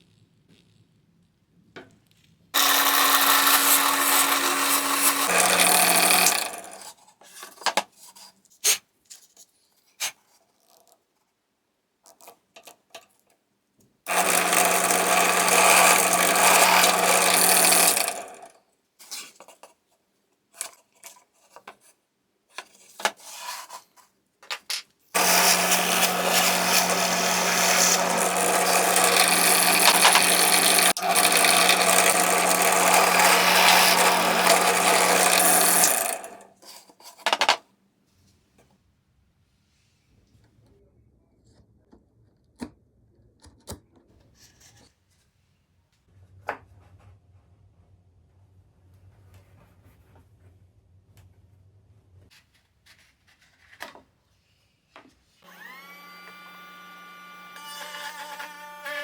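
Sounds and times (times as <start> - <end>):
power tool humming on wood: 2.6 - 6.8, 14.1 - 18.5, 25.2 - 36.5, 55.4 - 59.0.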